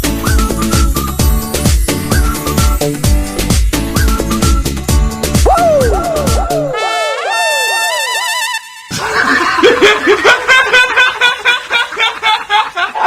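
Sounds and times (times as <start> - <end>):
person laughing hard: 5.4 - 6.8, 8.9 - 13.0
warbling falling pitch sweeps: 5.4 - 6.8.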